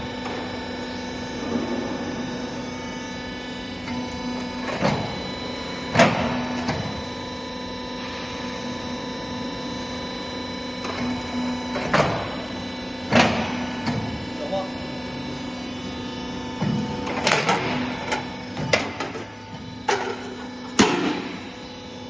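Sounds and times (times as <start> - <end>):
machine mechanical hum: 0.0 - 22.0.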